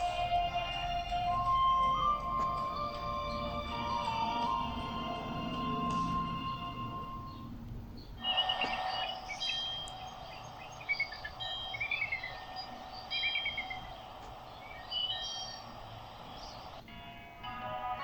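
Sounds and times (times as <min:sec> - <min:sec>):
background hiss: 0:00.0 - 0:18.0
birds chirping and trilling: 0:06.8 - 0:16.8.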